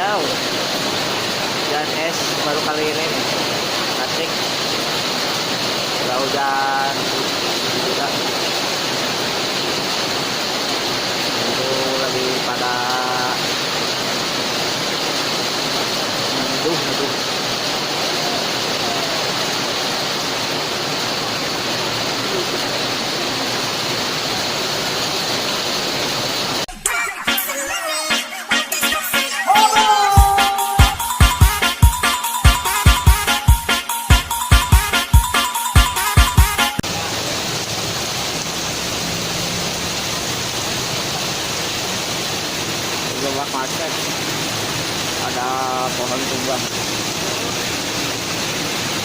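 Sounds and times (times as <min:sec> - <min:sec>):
rain and hail pouring: 0:00.0 - 0:26.9, 0:29.5 - 0:49.0
beat-driven music: 0:26.7 - 0:36.8.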